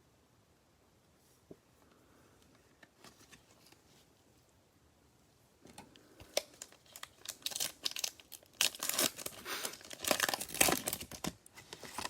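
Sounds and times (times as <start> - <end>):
wrapper being torn open and crinkled: 6.3 - 12.0.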